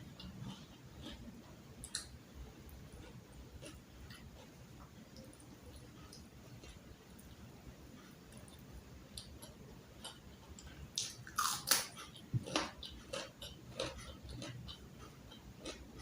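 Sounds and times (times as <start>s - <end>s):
chewing: 0.1s - 16.0s.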